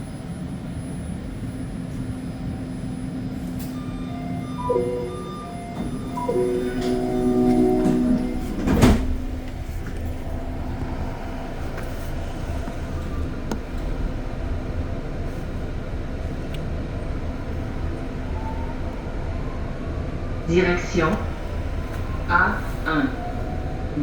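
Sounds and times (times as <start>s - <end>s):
train rumbling: 0.0s - 24.0s
train sliding doors shutting: 3.3s - 19.0s
chime tones: 4.1s - 8.8s.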